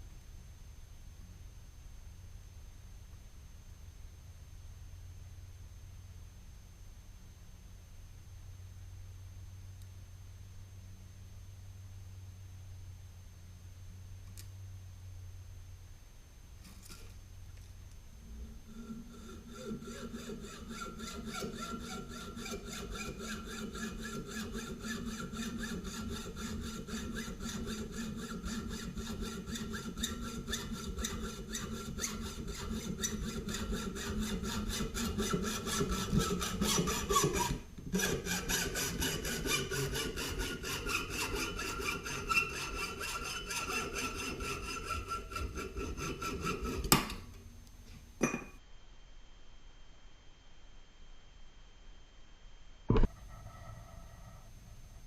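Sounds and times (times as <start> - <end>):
lathe scraping metal: 18.4 - 47.2
motor hum: 52.9 - 55.0.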